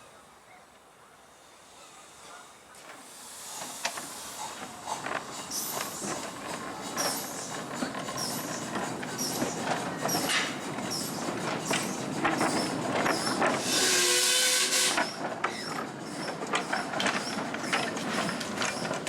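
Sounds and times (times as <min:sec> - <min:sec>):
steam hissing: 0:01.2 - 0:19.0
miniature train clicking: 0:03.6 - 0:19.0
locomotive whistle: 0:13.6 - 0:15.2.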